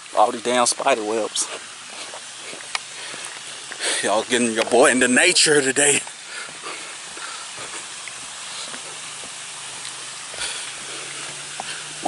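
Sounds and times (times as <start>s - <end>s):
flowing water hissing: 0.0s - 12.0s
faint ticks: 2.1s - 3.8s.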